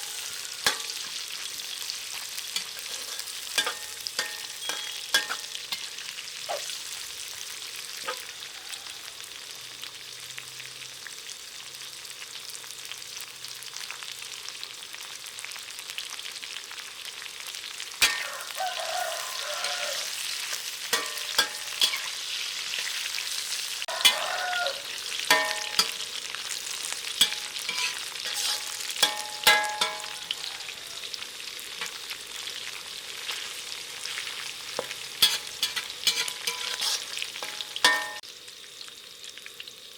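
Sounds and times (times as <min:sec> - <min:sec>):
food sizzling in a pan: 0:00.0 - 0:39.9
spatula scraping and clacking on pan: 0:00.6 - 0:01.3, 0:02.1 - 0:06.7, 0:18.0 - 0:23.0, 0:23.8 - 0:30.4, 0:33.2 - 0:38.2.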